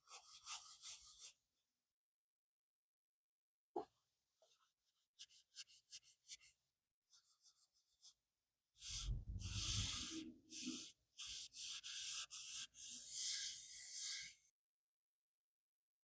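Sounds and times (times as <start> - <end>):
pencil scratching on paper: 8.9 - 14.3.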